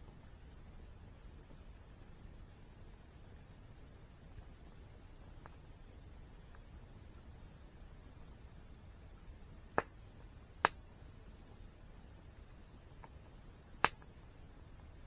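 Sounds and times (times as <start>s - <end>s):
steady low hiss: 0.0s - 15.0s
campfire wood crackling: 0.1s - 15.0s
sharp pops of burning wood: 4.1s - 7.2s, 7.8s - 15.0s.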